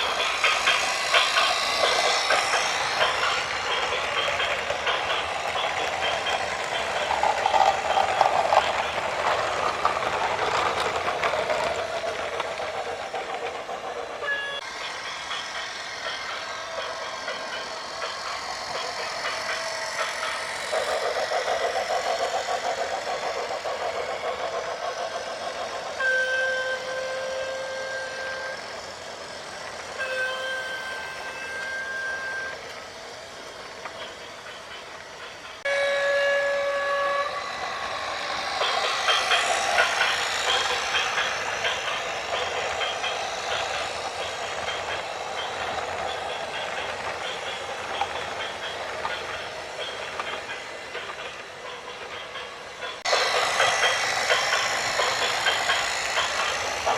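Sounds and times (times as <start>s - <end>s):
horn blasts: 35.7s - 37.4s.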